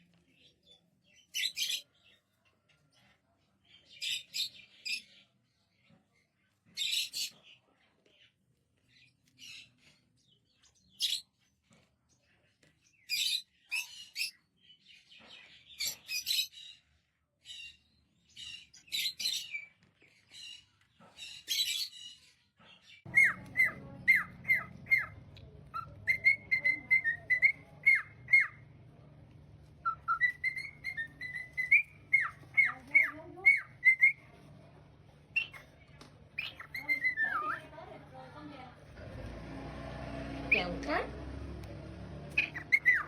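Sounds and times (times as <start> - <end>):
parrot squawking: 23.1 - 28.6, 29.8 - 34.2, 35.3 - 35.7, 36.4 - 37.7, 42.4 - 43.0.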